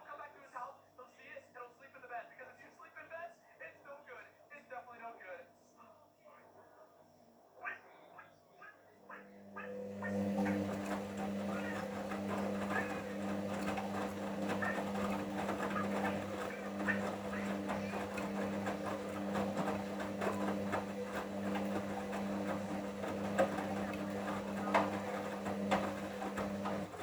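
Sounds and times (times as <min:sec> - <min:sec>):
washing machine motor hum: 0:09.1 - 0:27.0.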